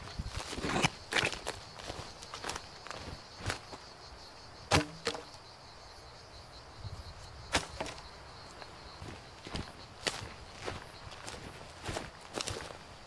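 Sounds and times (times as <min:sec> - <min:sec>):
high insect buzz: 0:00.0 - 0:13.0
dry wood cracking and knocking: 0:04.7 - 0:05.4.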